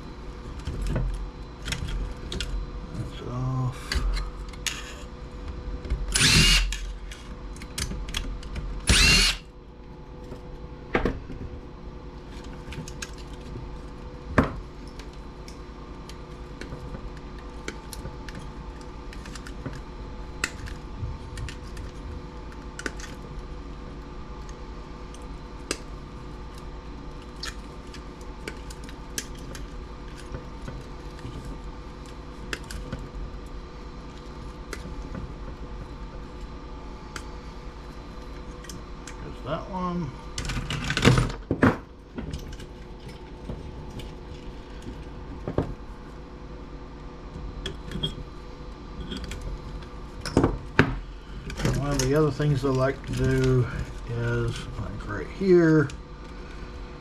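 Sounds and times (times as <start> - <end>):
steady faint hum: 0.0 - 57.0
power drill bursts: 6.1 - 6.8, 8.9 - 9.4.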